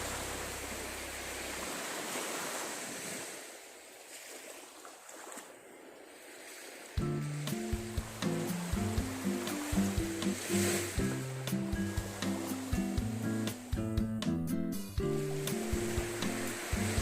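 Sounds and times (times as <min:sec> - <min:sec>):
low background music note: 0:00.0 - 0:01.6, 0:07.0 - 0:17.0
sea waves washing ashore: 0:00.0 - 0:13.9, 0:15.0 - 0:17.0.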